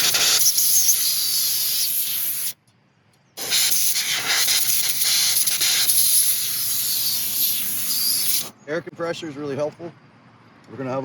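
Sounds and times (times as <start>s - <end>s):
compressed air hissing: 0.0s - 2.6s, 3.4s - 8.6s.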